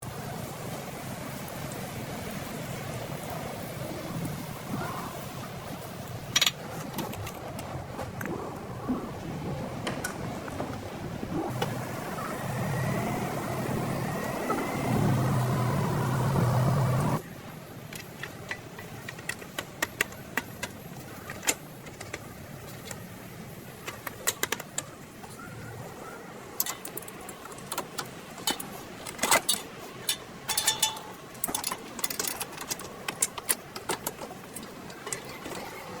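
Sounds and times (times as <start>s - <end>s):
metal tools clinking: 6.3s - 7.6s, 26.6s - 35.8s.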